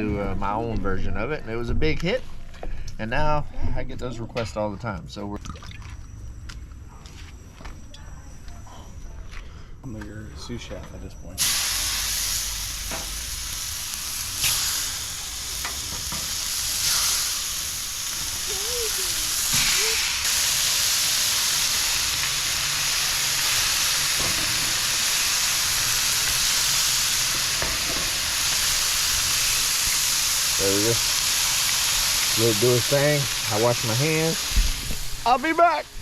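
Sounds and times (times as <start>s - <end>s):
food sizzling on a griddle: 11.4s - 36.0s.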